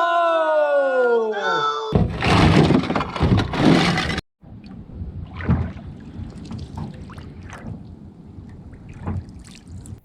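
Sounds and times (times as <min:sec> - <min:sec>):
water splashing in boat: 0:04.7 - 0:10.0.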